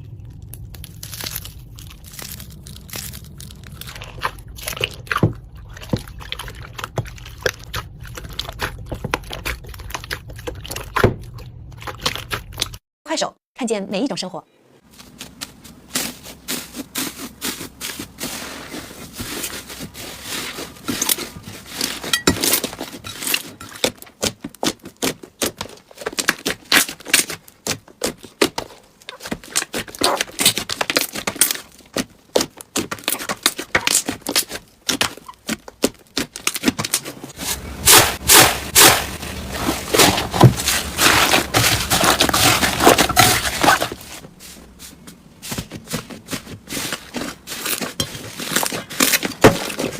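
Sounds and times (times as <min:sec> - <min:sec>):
slime crackling and popping: 0:00.0 - 0:11.1, 0:37.8 - 0:44.0.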